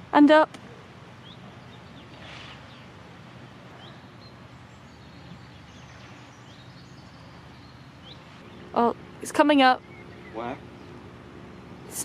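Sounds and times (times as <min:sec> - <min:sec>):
outdoor background noise: 0:00.0 - 0:12.0.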